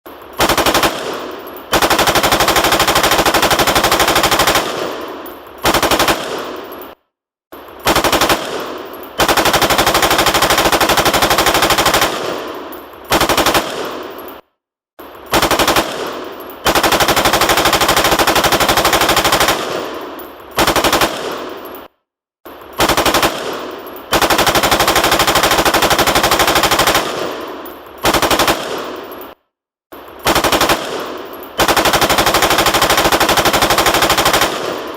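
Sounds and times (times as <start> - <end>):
automatic gunfire bursts: 0.4 - 6.8, 7.8 - 14.2, 15.3 - 21.6, 22.8 - 29.1, 30.2 - 34.9.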